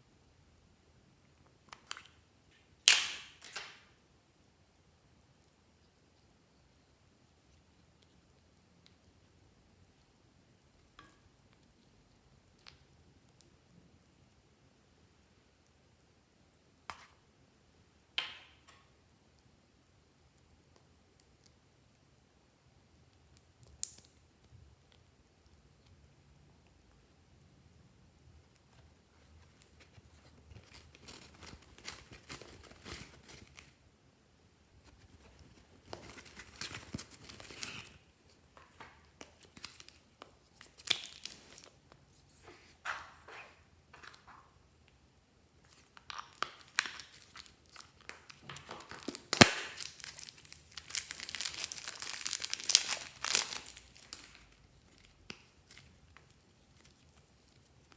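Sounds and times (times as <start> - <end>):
slime crackling and popping: 39.2 - 41.7, 45.8 - 57.0.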